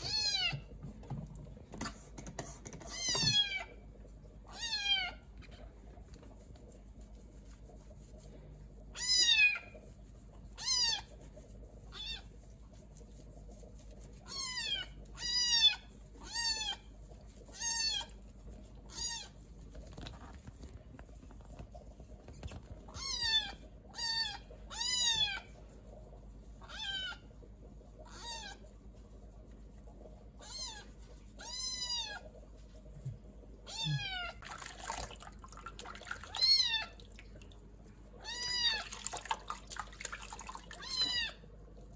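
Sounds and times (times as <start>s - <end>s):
kitten meowing: 4.5s - 5.2s, 9.0s - 9.7s, 11.9s - 12.2s, 14.3s - 16.8s, 17.5s - 18.1s, 18.9s - 19.4s, 22.9s - 25.5s, 26.6s - 27.2s, 30.4s - 32.2s, 33.7s - 34.4s, 36.3s - 37.0s, 38.2s - 39.0s, 40.8s - 41.4s.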